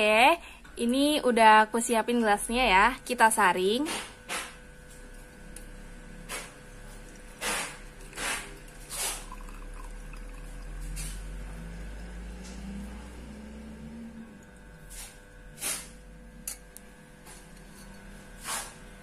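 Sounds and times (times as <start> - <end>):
liquid pouring into a glass: 6.8 - 14.8.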